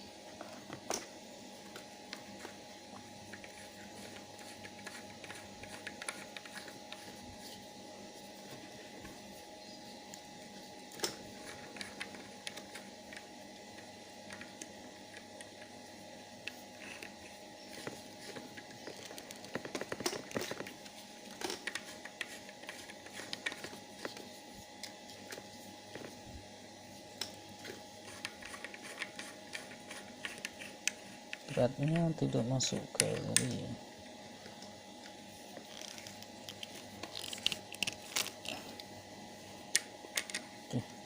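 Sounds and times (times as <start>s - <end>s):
faint steady hum: 0.0s - 41.0s
plastic parts clicking and scraping: 16.8s - 24.3s.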